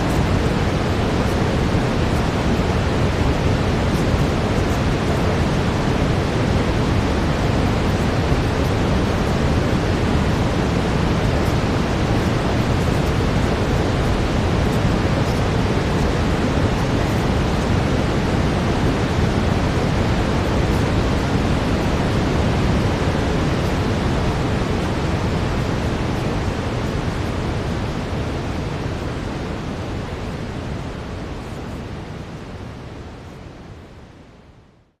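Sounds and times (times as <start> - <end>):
brown noise hiss: 0.0 - 35.0.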